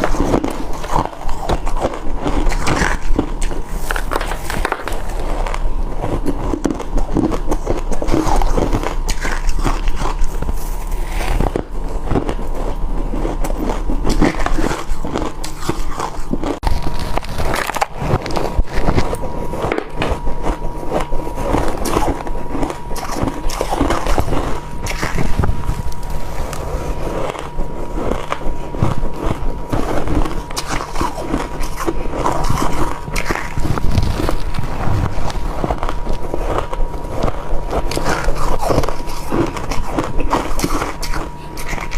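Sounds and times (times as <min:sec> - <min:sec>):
crushed ice being bitten: 0:00.0 - 0:41.9.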